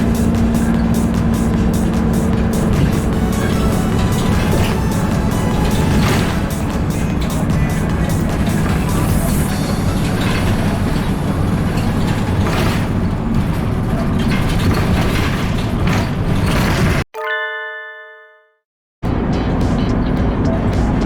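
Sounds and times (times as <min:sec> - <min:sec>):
bus engine and road rumble: 0:00.0 - 0:17.1, 0:19.0 - 0:21.0
bell-like chime: 0:17.2 - 0:18.6.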